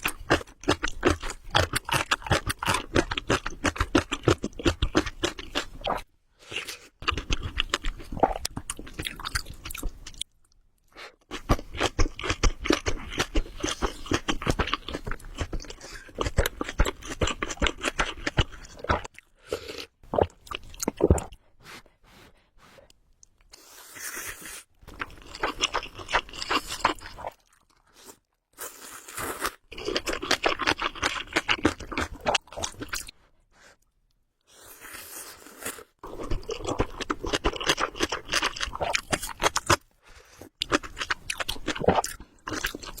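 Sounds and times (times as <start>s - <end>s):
chewing noodles mouth sounds: 24.9s - 33.1s, 35.2s - 39.8s, 40.4s - 43.0s.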